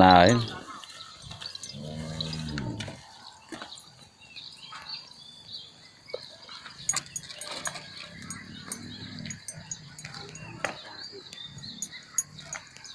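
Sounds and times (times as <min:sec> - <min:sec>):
farm animal call: 0:01.6 - 0:03.0, 0:06.9 - 0:12.9
faint clicks and rustles: 0:06.2 - 0:12.9.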